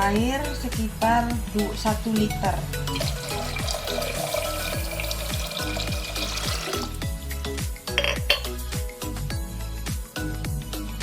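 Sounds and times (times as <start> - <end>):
background music with steady beat: 0.0 - 11.0
water pouring into a pot: 2.9 - 7.1.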